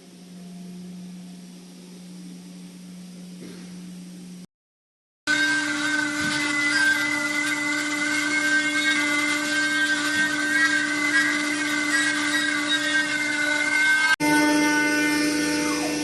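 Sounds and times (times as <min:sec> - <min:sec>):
cnc router spindle whine: 0:05.3 - 0:16.0.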